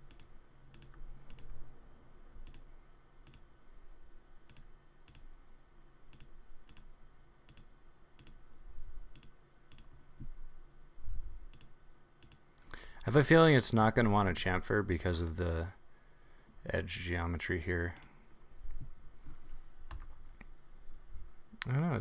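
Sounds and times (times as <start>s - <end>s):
computer mouse clicking: 0.0s - 1.6s, 2.4s - 3.5s, 4.5s - 5.3s, 6.1s - 6.9s, 7.5s - 8.4s, 9.1s - 10.0s, 11.5s - 12.4s.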